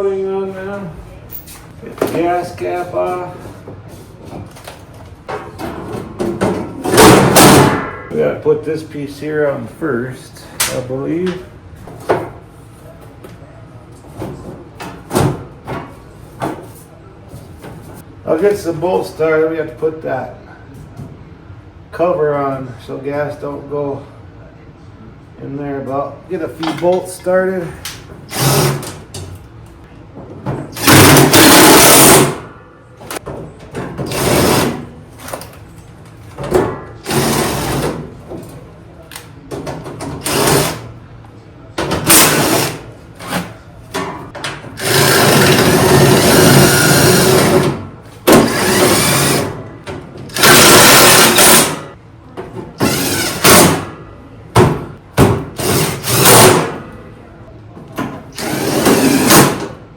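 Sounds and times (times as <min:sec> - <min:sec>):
power driver running bolts: 0:28.3 - 0:29.0, 0:30.8 - 0:32.4, 0:37.0 - 0:38.0, 0:40.2 - 0:40.9, 0:41.9 - 0:43.5, 0:44.8 - 0:49.6, 0:50.3 - 0:51.9, 0:52.8 - 0:53.9, 0:55.6 - 0:56.8, 0:58.3 - 0:59.7.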